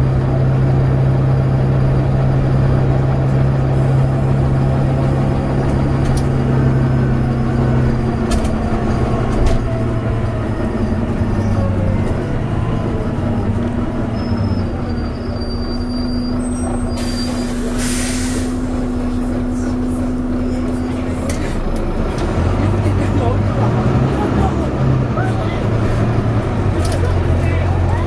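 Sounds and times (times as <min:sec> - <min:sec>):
bus engine running: 0:00.0 - 0:28.0
loud hiss of compressed air: 0:17.0 - 0:18.7.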